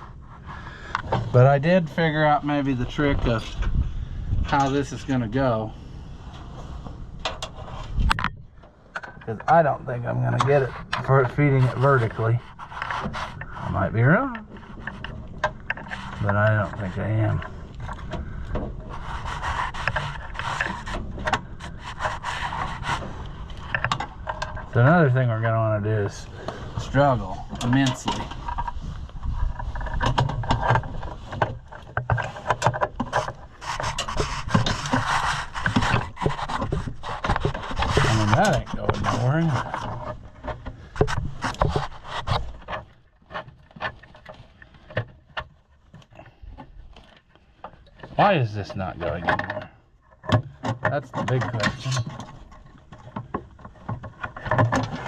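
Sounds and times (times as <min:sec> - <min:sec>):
cable rubbing and scraping on metal: 0:09.2 - 0:44.3, 0:50.9 - 0:55.0
cable clicking and knocking: 0:27.5 - 0:48.3, 0:49.1 - 0:55.0.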